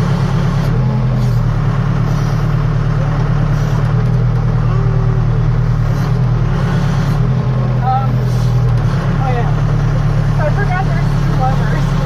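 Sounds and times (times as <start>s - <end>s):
backhoe diesel engine running: 0.0s - 12.0s.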